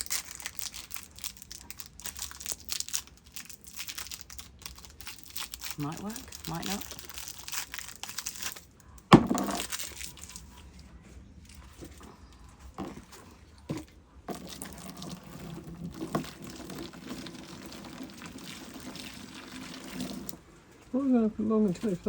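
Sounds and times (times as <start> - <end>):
loud knock: 9.1 - 9.5
water running from a tap: 14.3 - 20.4.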